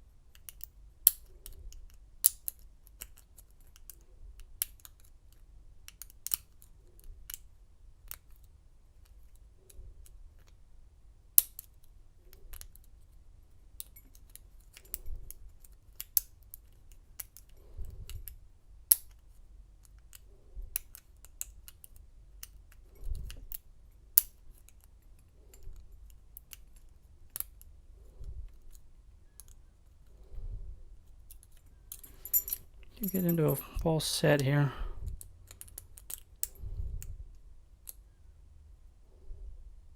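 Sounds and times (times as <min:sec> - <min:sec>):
lock pick clicking and scraping: 0:00.3 - 0:07.5, 0:13.8 - 0:23.6, 0:24.2 - 0:27.7, 0:31.1 - 0:33.7, 0:35.1 - 0:36.6.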